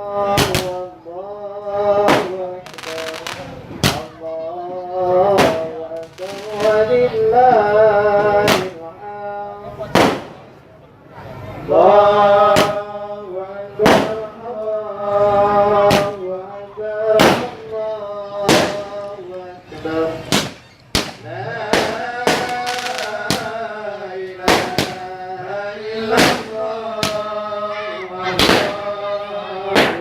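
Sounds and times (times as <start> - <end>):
music with long sung notes: 0.0 - 10.6, 11.4 - 30.0
fireworks bangs: 0.3 - 0.9, 2.0 - 4.2, 5.2 - 7.1, 8.3 - 8.8, 9.8 - 10.6, 12.5 - 12.9, 13.8 - 14.4, 15.8 - 16.2, 17.1 - 17.8, 18.4 - 19.2, 20.1 - 25.3, 26.0 - 27.4, 28.3 - 29.0, 29.7 - 30.0.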